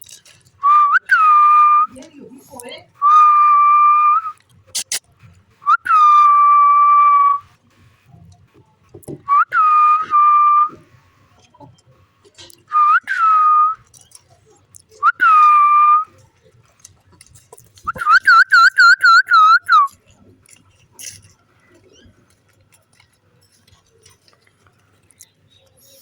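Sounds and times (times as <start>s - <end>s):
long whistles: 0.6s - 1.9s, 3.0s - 5.0s, 5.6s - 7.5s, 9.3s - 10.8s, 12.7s - 13.8s, 15.0s - 16.1s, 17.9s - 19.9s.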